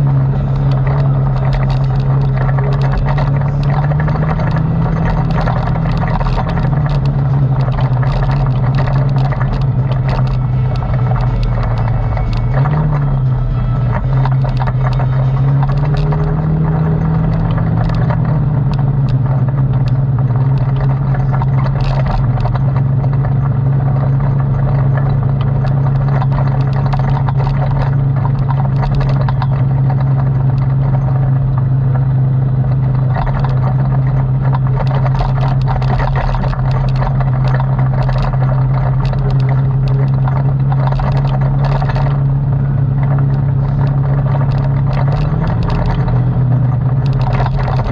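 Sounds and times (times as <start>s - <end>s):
atv engine running: 0.0s - 47.9s
rattles and clatter: 0.0s - 47.9s.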